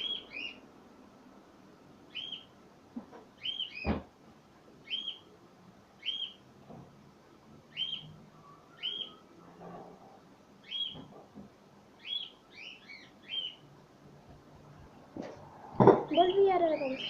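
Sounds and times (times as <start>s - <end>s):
bird chirping: 0.0s - 0.7s, 2.1s - 2.6s, 3.4s - 4.0s, 4.8s - 5.3s, 6.0s - 6.4s, 7.7s - 9.4s, 10.6s - 11.2s, 12.0s - 13.7s, 16.1s - 17.0s.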